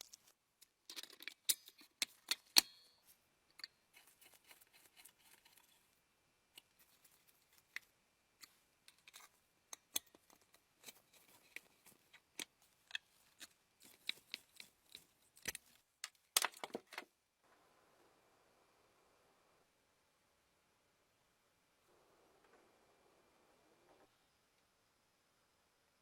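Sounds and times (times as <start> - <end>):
small parts clicking and tapping: 0.0 - 17.1.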